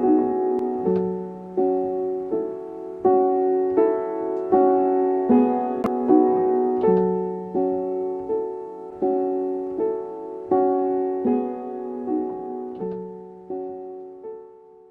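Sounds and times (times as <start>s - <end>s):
piano-like keyboard chords: 0.0s - 14.9s.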